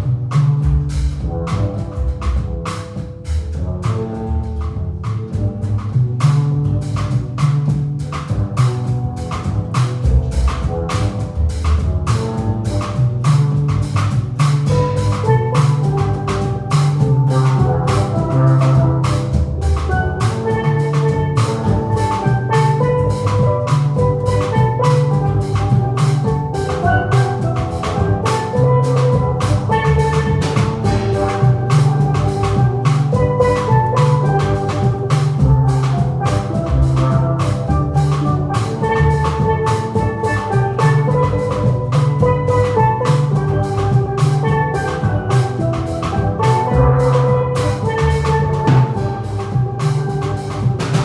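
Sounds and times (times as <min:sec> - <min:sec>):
bass line: 0:00.0 - 0:51.0
drum kit beat: 0:00.0 - 0:51.0
steel pan melody: 0:14.5 - 0:51.0.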